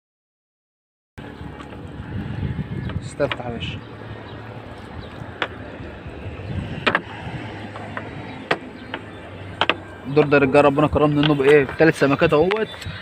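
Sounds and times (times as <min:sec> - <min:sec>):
sharp knocks on boat: 0:06.8 - 0:07.1, 0:07.7 - 0:09.9.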